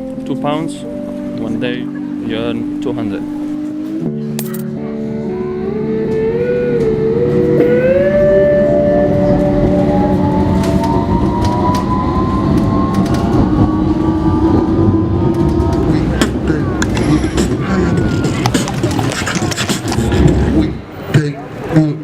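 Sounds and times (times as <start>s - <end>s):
wheels rumbling: 5.5s - 21.7s.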